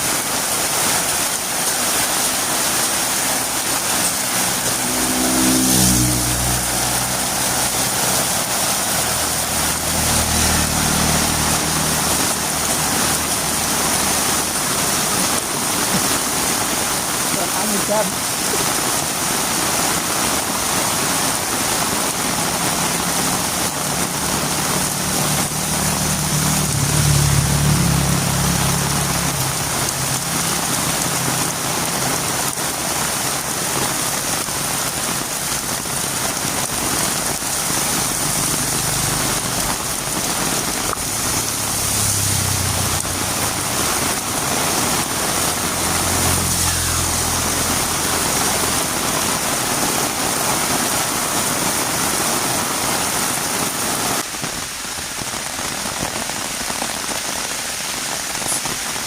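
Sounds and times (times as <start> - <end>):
vehicle engine: 0.0 - 54.8
heavy rain on a road: 0.0 - 59.0.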